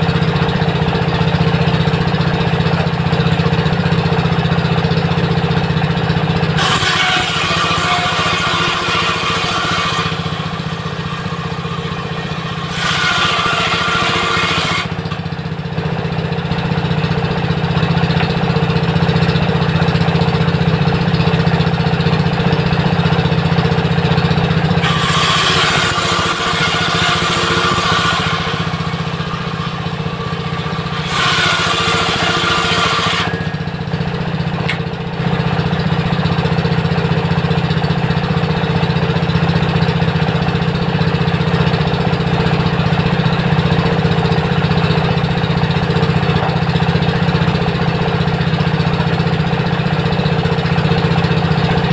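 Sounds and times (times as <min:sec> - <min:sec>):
saw blade cutting timber: 0:00.0 - 0:05.6, 0:06.2 - 0:51.9
diesel engine humming: 0:00.0 - 0:08.6, 0:09.4 - 0:12.8, 0:14.7 - 0:24.9, 0:26.2 - 0:31.8, 0:33.2 - 0:51.9.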